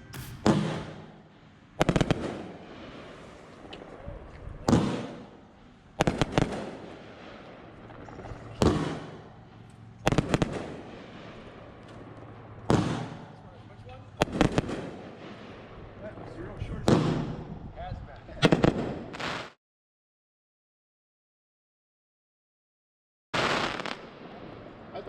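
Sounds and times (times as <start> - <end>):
fireworks bangs and cracks: 0.0 - 3.2, 3.8 - 5.3, 6.0 - 7.5, 8.6 - 9.3, 10.1 - 11.4, 12.7 - 13.3, 14.2 - 15.6, 16.2 - 17.4, 23.4 - 24.7.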